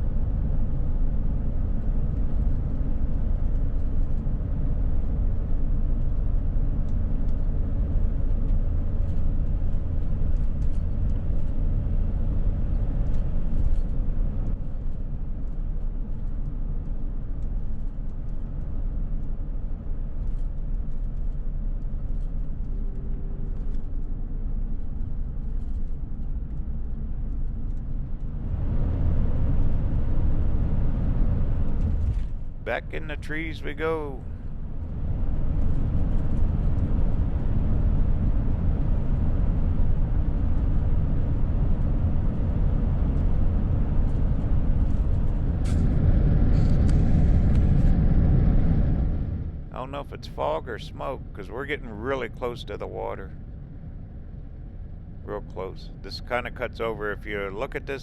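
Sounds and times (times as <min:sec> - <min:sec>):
road and engine rumble: 0:00.0 - 0:58.0.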